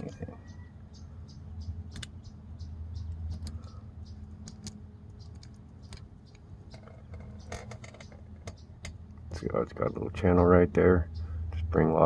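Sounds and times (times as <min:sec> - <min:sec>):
steady low hum: 0:00.0 - 0:12.0
metal parts clicking and tapping: 0:03.1 - 0:09.3.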